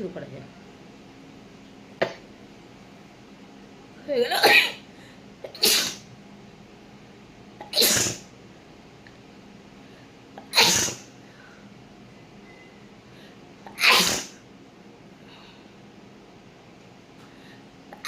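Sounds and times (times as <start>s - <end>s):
woman sneezing: 4.2s - 4.8s, 5.6s - 6.0s, 7.7s - 8.2s, 10.5s - 11.1s, 13.8s - 14.4s.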